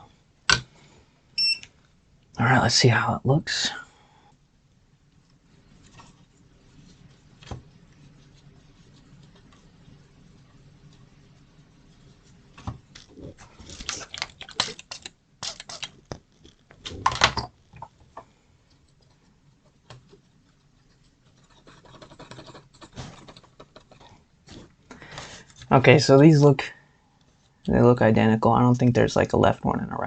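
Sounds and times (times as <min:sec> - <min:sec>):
hands handling small parts: 0:12.6 - 0:18.3.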